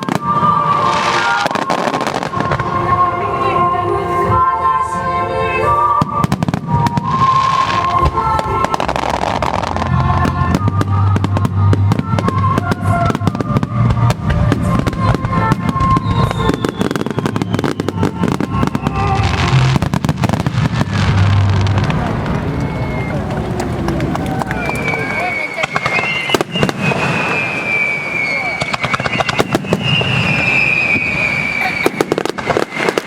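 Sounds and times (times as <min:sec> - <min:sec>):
fireworks cracking and banging: 0:00.0 - 0:04.5, 0:05.7 - 0:33.0
music playing: 0:00.0 - 0:25.3.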